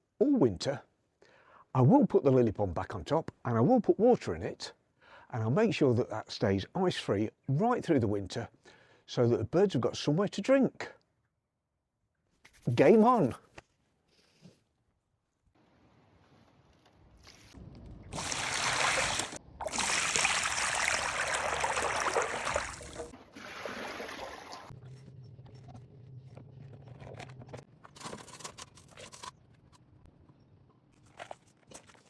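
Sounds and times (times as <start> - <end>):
water rushing and splashing: 18.1 - 24.7.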